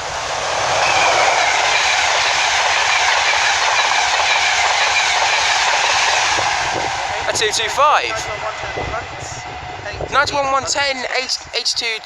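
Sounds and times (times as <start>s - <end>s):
train passing at speed: 0.0s - 12.0s.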